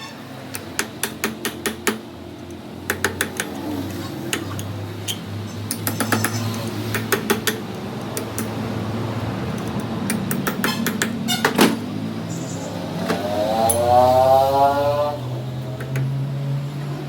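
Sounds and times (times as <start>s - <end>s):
sharp metal clicks and knocks: 0.5s - 3.6s, 4.3s - 8.6s, 9.5s - 11.8s.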